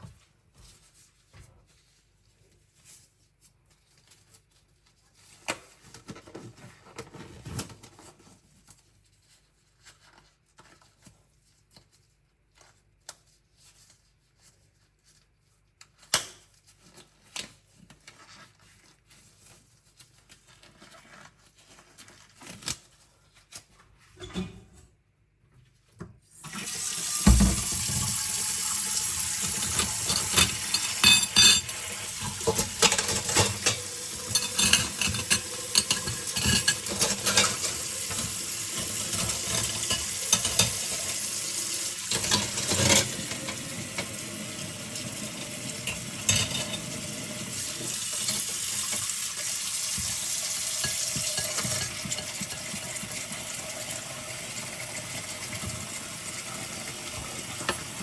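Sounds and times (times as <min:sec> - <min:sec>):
tap water running into a sink: 0:26.4 - 0:58.0
dishes and cutlery clinking: 0:29.7 - 0:41.2, 0:42.1 - 0:44.1, 0:45.8 - 0:46.9, 0:50.8 - 0:53.0.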